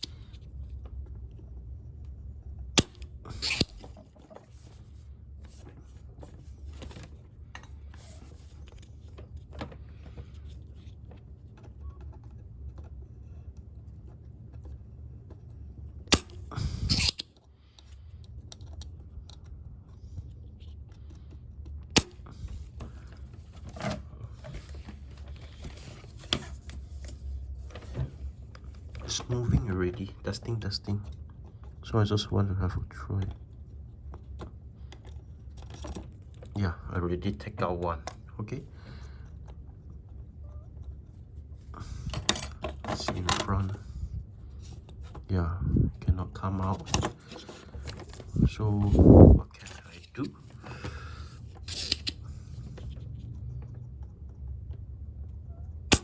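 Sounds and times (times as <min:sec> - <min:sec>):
steady low hum: 0:00.0 - 0:56.0
soldering tool clicks and scraping: 0:02.0 - 0:04.1, 0:16.1 - 0:19.9, 0:51.5 - 0:52.8.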